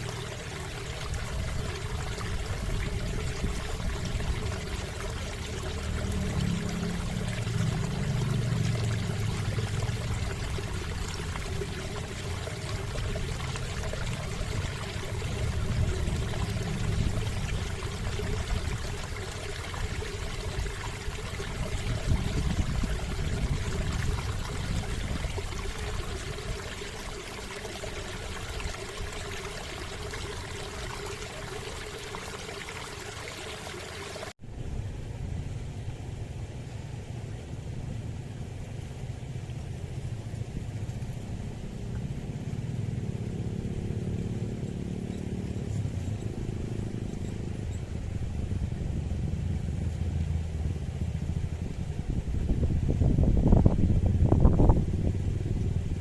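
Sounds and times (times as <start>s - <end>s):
river water rushing: 0.0s - 34.3s.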